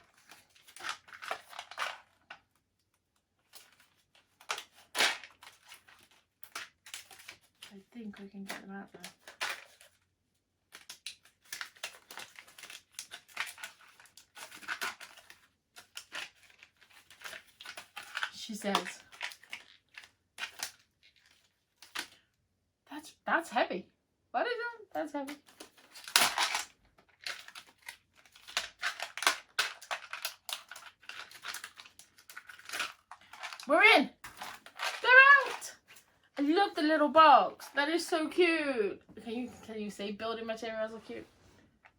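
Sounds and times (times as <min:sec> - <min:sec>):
plastic packaging crackling: 0:00.0 - 0:02.6, 0:03.4 - 0:10.0, 0:10.7 - 0:22.2, 0:25.3 - 0:36.6.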